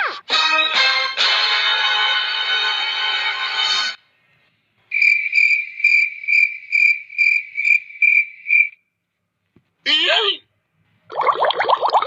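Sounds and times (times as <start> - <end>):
cricket chirping: 4.9 - 8.9.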